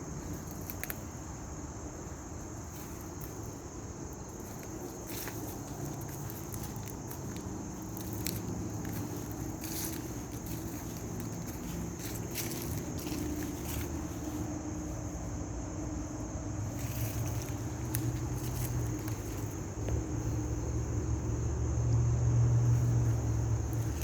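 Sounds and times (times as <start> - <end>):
distant traffic rumble: 0.0 - 24.0
insect drone: 0.0 - 24.0
footstep scuffs: 4.4 - 14.5, 16.7 - 20.2.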